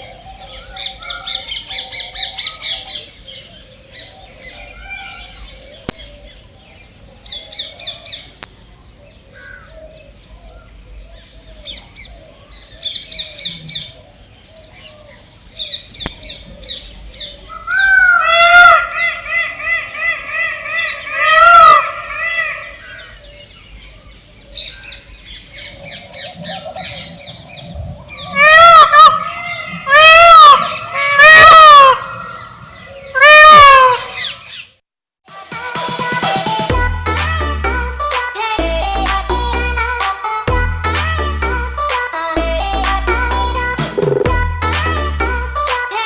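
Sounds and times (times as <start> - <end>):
small birds chirping: 0.0 - 21.4, 22.0 - 34.8
large bird repeated calls: 9.3 - 34.8.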